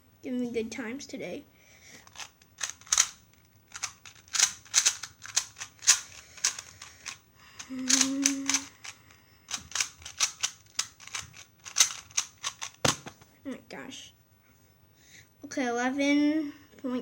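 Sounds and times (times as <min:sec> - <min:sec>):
puzzle cube plastic clicks: 0:02.0 - 0:13.2.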